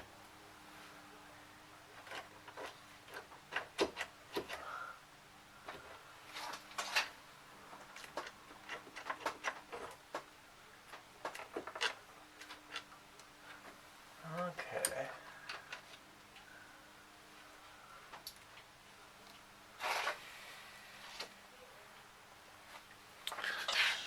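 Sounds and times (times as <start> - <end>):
faint steady hum: 0.0 - 24.0
hand tools clicking and tapping: 2.0 - 4.6.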